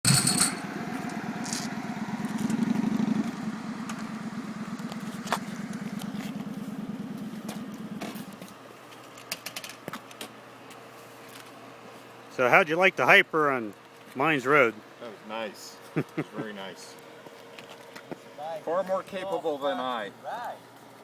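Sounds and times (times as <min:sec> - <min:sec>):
motorcycle engine idling: 0:00.1 - 0:08.7.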